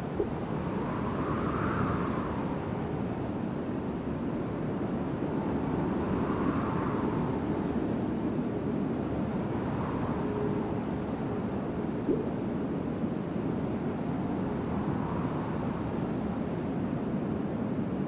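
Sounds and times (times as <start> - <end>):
faint wind whistling: 0.0 - 18.0.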